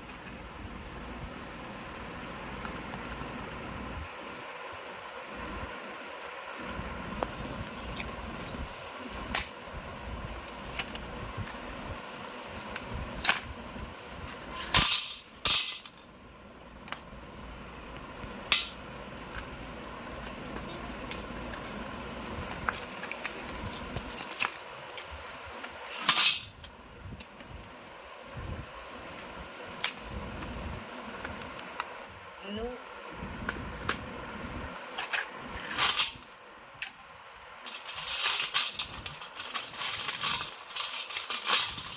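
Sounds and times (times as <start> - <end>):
background hum: 0.0 - 41.9
scraping: 37.6 - 41.9
pencils clicking together: 37.7 - 41.9.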